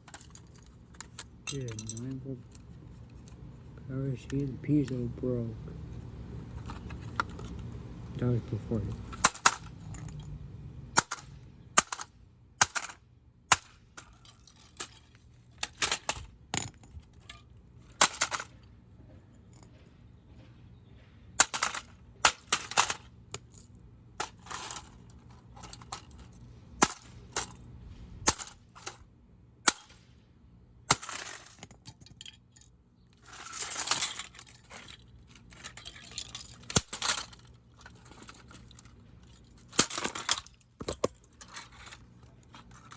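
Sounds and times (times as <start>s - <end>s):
rattling crunch: 0.0s - 20.4s, 21.4s - 29.0s, 30.9s - 42.9s
broken pieces clinking: 14.0s - 18.6s, 21.4s - 27.6s, 30.9s - 42.9s.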